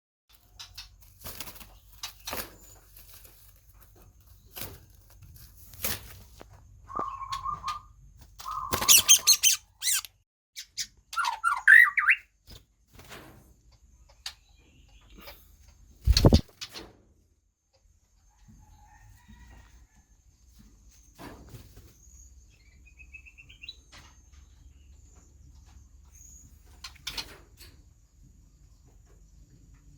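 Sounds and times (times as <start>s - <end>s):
wing flaps and knocks: 0.3s - 7.5s, 16.0s - 17.1s
bird chirping calls: 6.8s - 12.4s
bird whistled notes: 6.9s - 7.9s, 11.2s - 12.2s.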